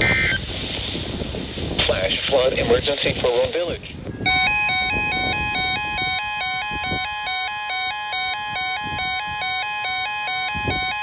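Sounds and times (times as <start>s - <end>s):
emergency alert warbling tone: 0.0s - 0.4s, 4.2s - 11.0s.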